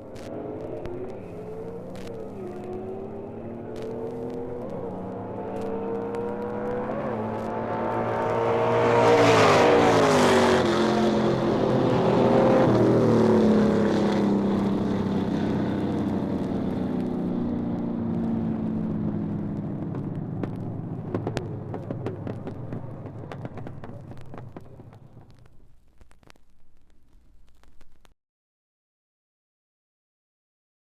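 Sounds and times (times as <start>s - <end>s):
vehicle engine passing by: 0.2s - 18.2s.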